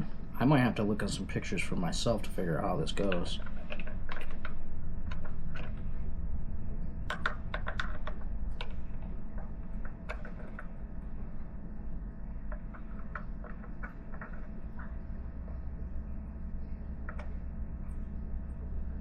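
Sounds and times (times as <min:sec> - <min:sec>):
steady low hum: 0:00.0 - 0:19.0
light clicks and taps: 0:02.9 - 0:05.8.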